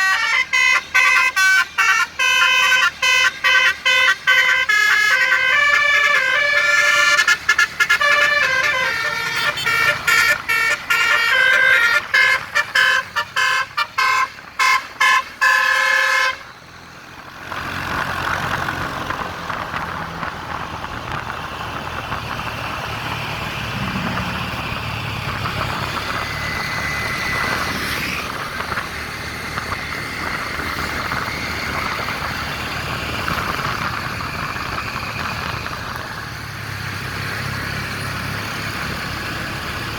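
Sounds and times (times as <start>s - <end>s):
bus horn playing a tune: 0.0s - 16.5s
road and engine noise: 0.0s - 39.9s.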